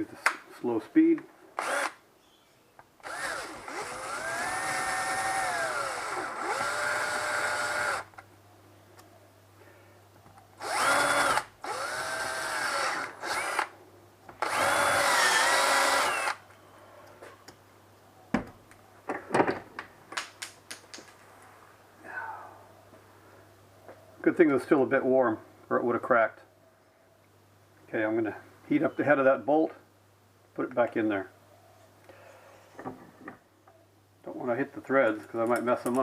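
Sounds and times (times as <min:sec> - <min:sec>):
power drill drilling plastic: 0:03.0 - 0:08.0, 0:10.6 - 0:13.7, 0:14.4 - 0:16.4.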